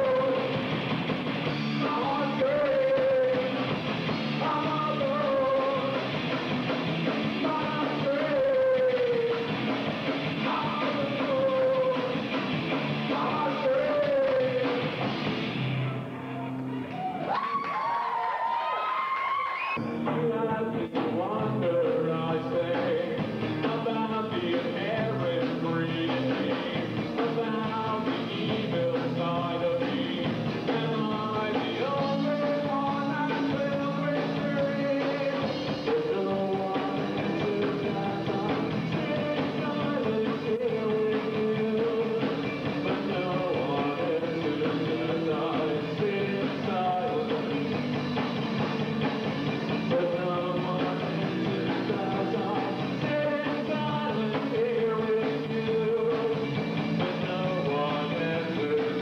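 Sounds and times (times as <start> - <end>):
person singing: 0.0 - 0.6, 1.8 - 3.6, 4.2 - 6.1, 7.2 - 9.6, 10.4 - 12.2, 13.0 - 15.0, 19.8 - 47.9, 49.7 - 59.0
rock band playing live: 0.0 - 17.1, 19.8 - 59.0.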